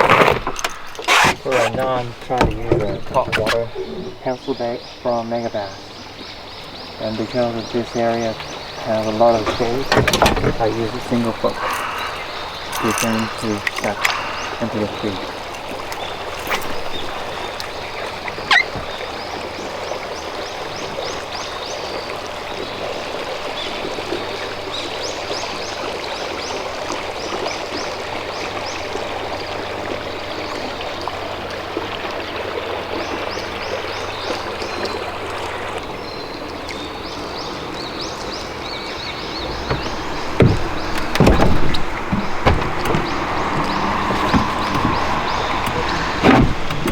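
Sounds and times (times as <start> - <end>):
heavy knocks: 0.0 - 4.4, 8.3 - 14.8, 39.1 - 46.9
lake water washing and trickling: 0.0 - 46.9.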